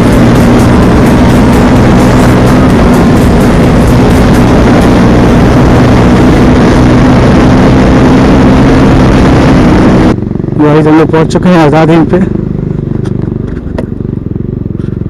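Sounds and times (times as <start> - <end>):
wind noise on microphone: 0.0 - 10.2
motorcycle engine cruising: 0.0 - 15.0.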